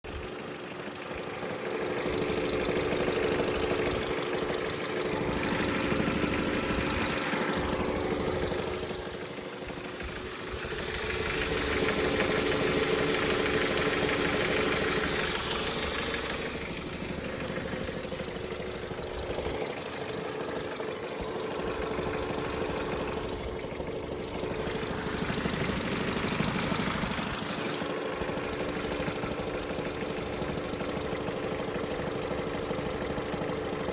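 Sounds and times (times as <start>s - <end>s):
car engine knocking: 0.0s - 33.9s.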